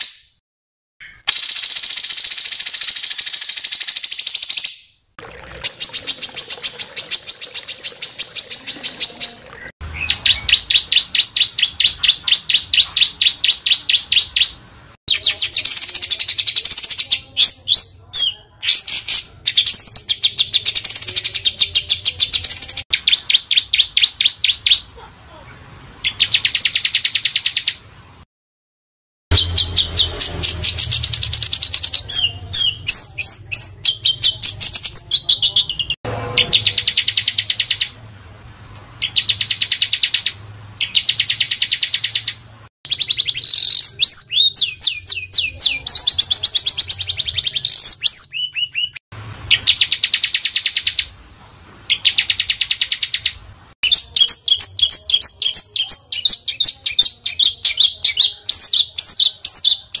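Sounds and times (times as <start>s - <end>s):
songbird trills: 39.0s - 51.1s, 51.9s - 60.0s
whistled bird notes: 39.0s - 51.1s.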